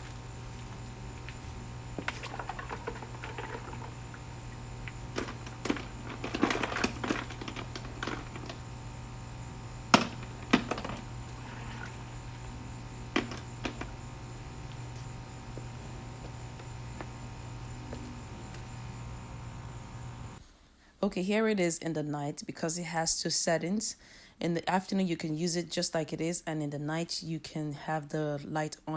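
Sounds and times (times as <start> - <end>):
steady low hum: 0.0 - 20.5.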